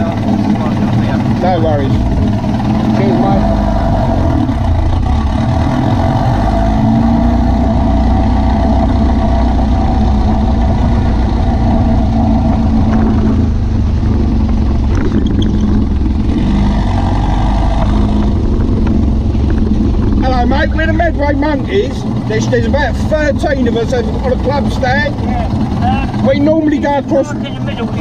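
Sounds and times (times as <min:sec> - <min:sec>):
car engine running at low revs: 0:00.0 - 0:28.0.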